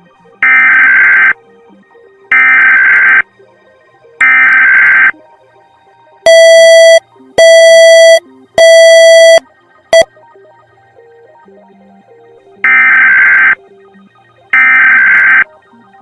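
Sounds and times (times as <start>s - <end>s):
alert data tones: 0.4s - 1.4s, 2.3s - 3.2s, 4.2s - 5.1s, 6.3s - 9.4s, 12.7s - 13.6s, 14.6s - 15.4s
harsh buzzy beeps: 0.4s - 1.4s, 2.3s - 3.2s, 4.2s - 5.1s, 6.3s - 9.4s, 12.6s - 13.6s, 14.6s - 15.4s.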